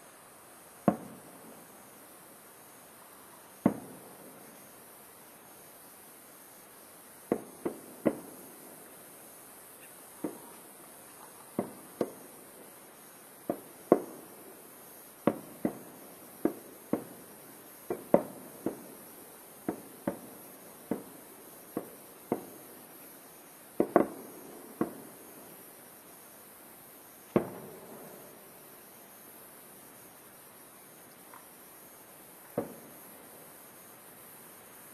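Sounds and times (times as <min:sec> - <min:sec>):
fireworks bursting with echo: 0:00.8 - 0:01.9, 0:03.5 - 0:04.8, 0:07.2 - 0:09.0, 0:10.2 - 0:25.8, 0:27.2 - 0:28.8, 0:32.4 - 0:33.4.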